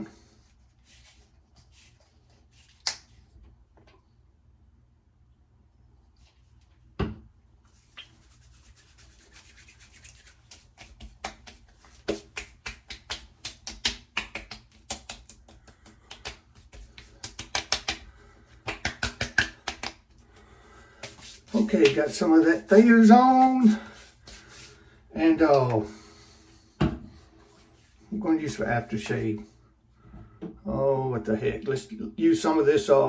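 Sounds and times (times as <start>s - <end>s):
hands patting face: 2.6s - 3.2s, 7.8s - 24.8s.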